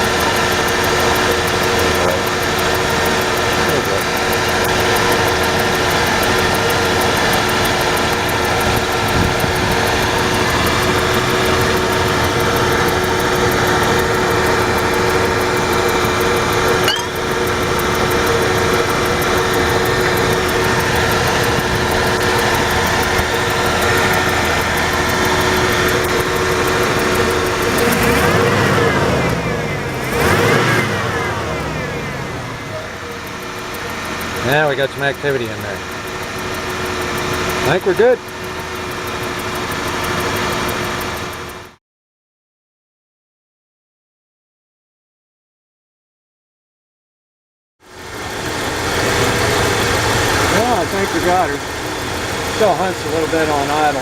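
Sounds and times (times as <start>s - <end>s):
truck engine idling: 0.0s - 41.8s, 47.9s - 54.0s.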